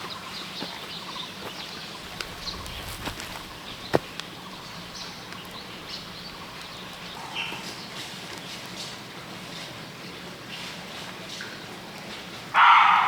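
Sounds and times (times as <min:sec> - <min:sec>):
small birds chirping: 0:00.0 - 0:09.0.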